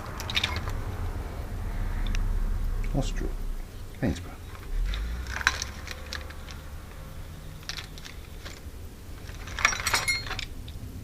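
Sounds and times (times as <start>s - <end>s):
small metal objects clinking: 0.0s - 0.8s, 4.4s - 10.6s.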